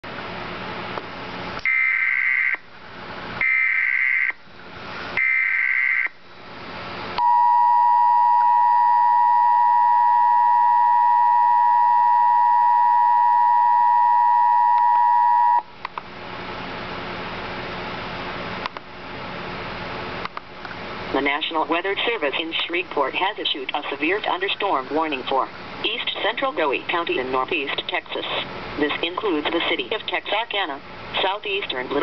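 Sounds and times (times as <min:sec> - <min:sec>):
two-tone attention signal: 0:07.2 - 0:15.7.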